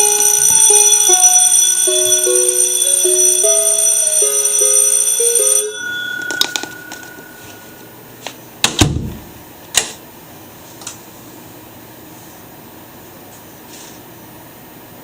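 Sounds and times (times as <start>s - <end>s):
electric alarm bell ringing: 0.0s - 8.0s
steady beep: 0.0s - 8.0s
heavy thump: 8.7s - 9.4s.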